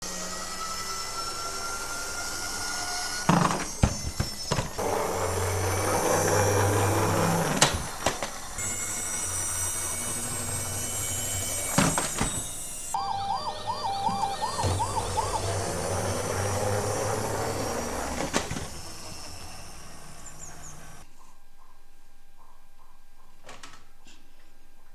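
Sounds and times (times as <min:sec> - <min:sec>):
emergency vehicle sirens: 0:11.9 - 0:21.0.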